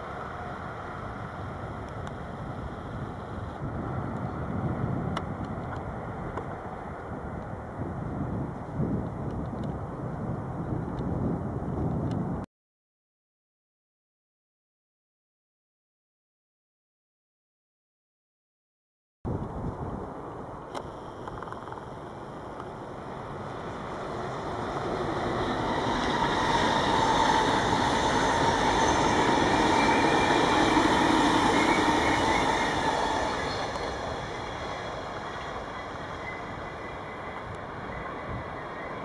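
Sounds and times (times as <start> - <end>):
train passing on tracks: 0.0 - 12.4, 19.3 - 39.0
high wheel squeal: 25.0 - 39.0.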